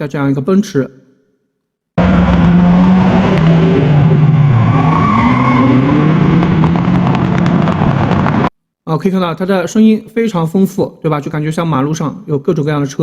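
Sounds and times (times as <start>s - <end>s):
car engines droning: 2.0s - 8.5s.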